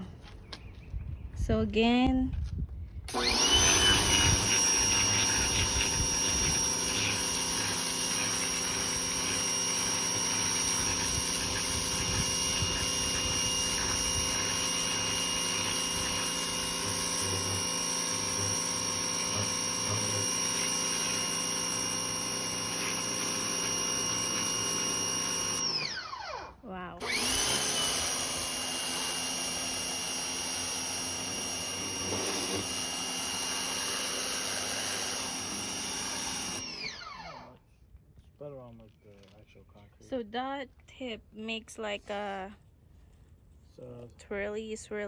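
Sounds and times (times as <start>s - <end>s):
pressure washer motor whine: 3.1s - 37.5s.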